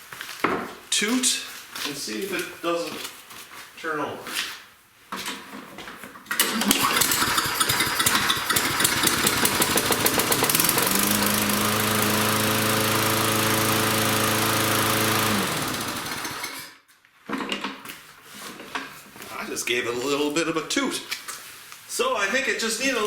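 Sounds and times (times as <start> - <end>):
lawn mower engine running: 6.3 - 16.7.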